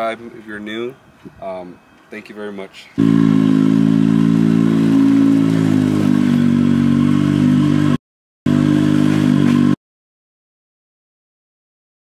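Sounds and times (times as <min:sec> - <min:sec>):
vehicle engine running: 0:03.0 - 0:09.8.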